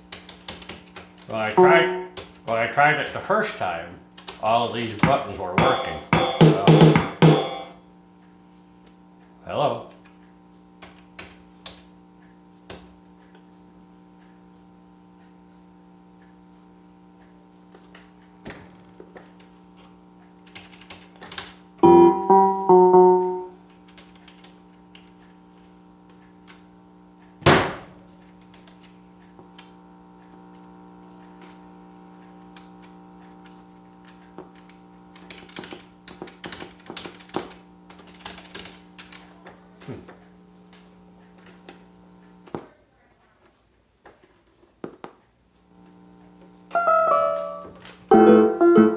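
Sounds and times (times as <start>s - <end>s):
electronic keyboard held tone: 1.5s - 2.2s, 5.0s - 7.8s, 21.8s - 23.6s, 46.7s - 48.9s
loud knock: 5.0s - 7.7s, 27.5s - 27.9s.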